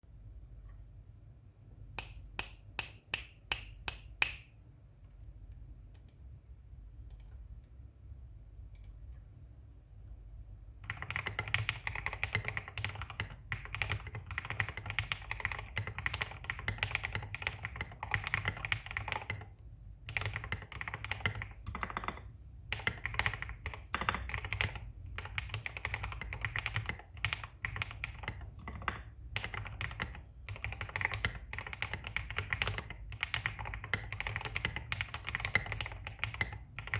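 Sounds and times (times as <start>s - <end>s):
typing on mechanical keyboard: 10.8s - 36.9s.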